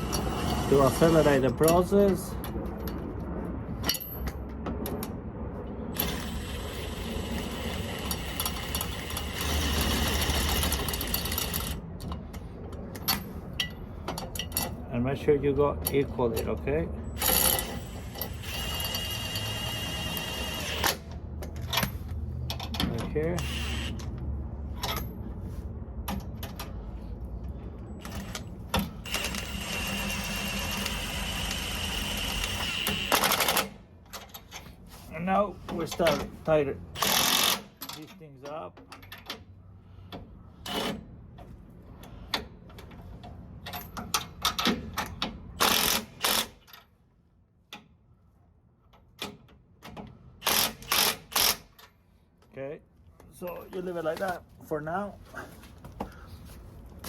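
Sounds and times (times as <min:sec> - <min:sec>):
impact wrench whining and rattling: 0:00.0 - 0:02.2, 0:05.9 - 0:11.8, 0:17.0 - 0:24.1, 0:28.0 - 0:34.7, 0:36.9 - 0:38.0, 0:43.7 - 0:46.9, 0:50.4 - 0:51.9
impact wrench running: 0:23.4 - 0:24.0, 0:29.0 - 0:33.7, 0:37.0 - 0:37.7, 0:45.6 - 0:46.6, 0:50.4 - 0:51.6.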